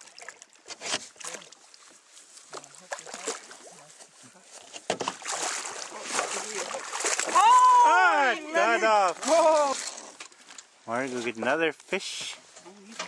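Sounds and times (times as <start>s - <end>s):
sharp splashes: 0.0s - 4.0s, 4.9s - 8.3s
water sloshing against boat: 0.0s - 8.1s.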